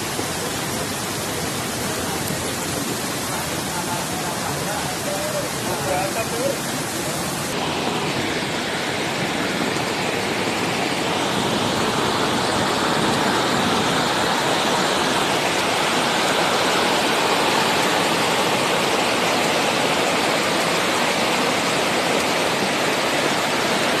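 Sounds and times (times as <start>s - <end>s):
rushing floodwater: 0.0s - 24.0s
torrential rain: 0.0s - 24.0s.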